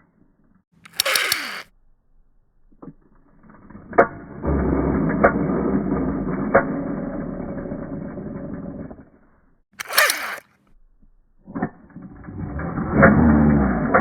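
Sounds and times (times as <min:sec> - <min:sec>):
mechanical clicks: 0:00.8 - 0:01.7, 0:09.8 - 0:10.7
toy gun firing: 0:00.9 - 0:01.7, 0:09.8 - 0:10.4.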